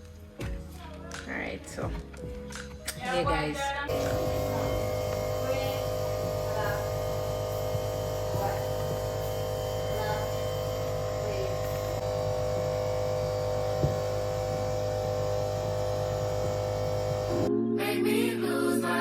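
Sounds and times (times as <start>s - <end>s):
electrical hum: 3.9s - 17.5s.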